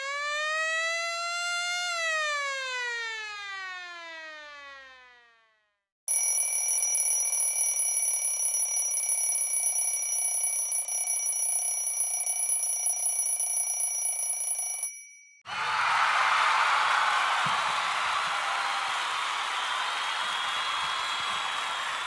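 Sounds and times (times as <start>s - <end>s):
electric bell ringing: 6.1s - 15.4s.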